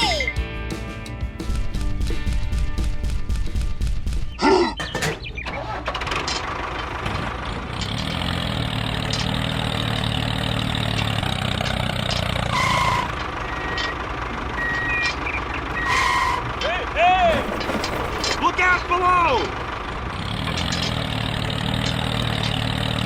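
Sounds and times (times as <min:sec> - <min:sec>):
engine starting and idling: 0:01.5 - 0:23.0.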